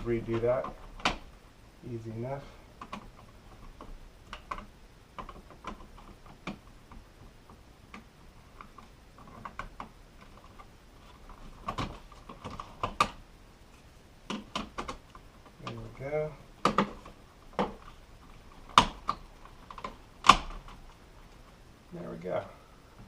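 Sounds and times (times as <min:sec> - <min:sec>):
sharp plastic snaps: 0:00.2 - 0:01.3, 0:02.8 - 0:10.7, 0:11.6 - 0:13.2, 0:14.2 - 0:21.4.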